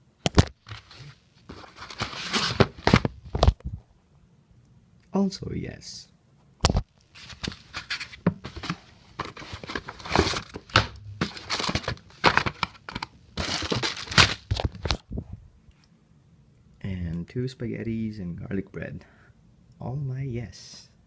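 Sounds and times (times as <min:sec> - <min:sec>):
paper and cardboard crinkling: 0:00.4 - 0:03.5, 0:07.0 - 0:15.0.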